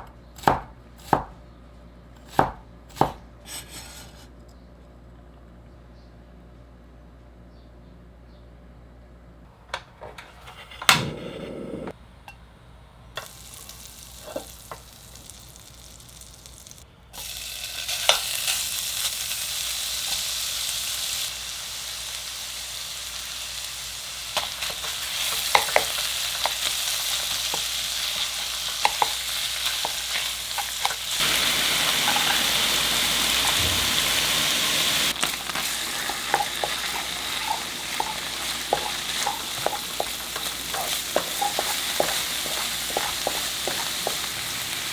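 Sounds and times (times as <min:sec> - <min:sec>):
spatula scraping pan: 0:03.5 - 0:04.3, 0:10.0 - 0:11.9, 0:24.6 - 0:44.9
food sizzling in frying pan: 0:13.2 - 0:44.9.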